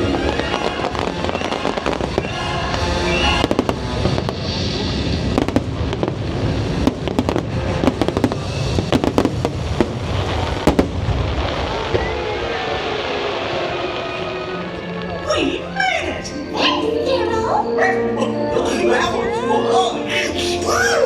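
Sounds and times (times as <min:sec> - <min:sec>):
fireworks popping and crackling: 0:00.0 - 0:15.4
music soundtrack: 0:00.0 - 0:21.0.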